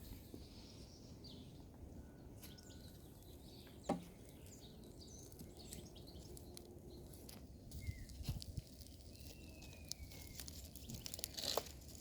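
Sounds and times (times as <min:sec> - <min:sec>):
birds chirping: 0:00.0 - 0:11.6
campfire crackling and popping: 0:05.0 - 0:12.0.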